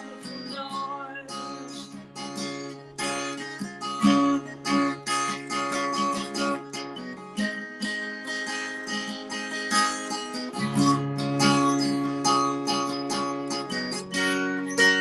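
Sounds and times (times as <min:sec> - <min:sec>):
person singing: 0:00.0 - 0:02.7
acoustic guitar strummed: 0:00.0 - 0:15.0.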